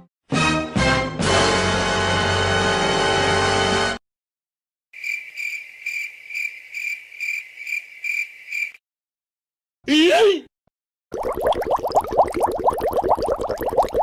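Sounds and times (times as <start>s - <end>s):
music: 0.0s - 4.0s
cricket chirping: 5.0s - 8.8s.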